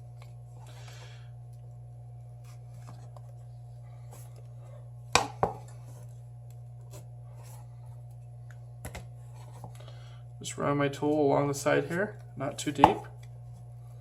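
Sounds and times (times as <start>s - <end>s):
low electrical hum: 0.0s - 14.0s.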